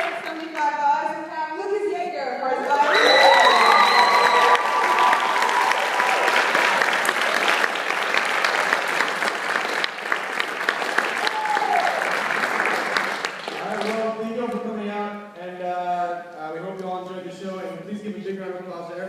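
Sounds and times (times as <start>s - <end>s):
audience applauding: 0.0s - 0.6s, 2.6s - 14.2s
voices cheering: 2.6s - 8.6s, 11.2s - 12.4s.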